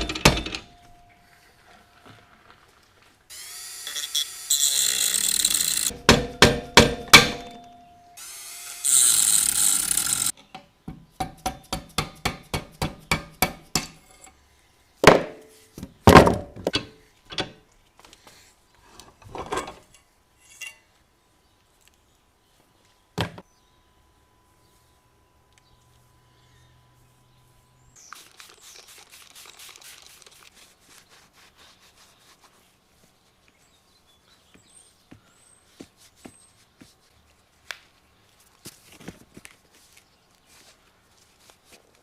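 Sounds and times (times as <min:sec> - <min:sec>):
power tool running: 0:03.3 - 0:06.0, 0:08.2 - 0:10.3
sharp knocks: 0:05.9 - 0:07.6.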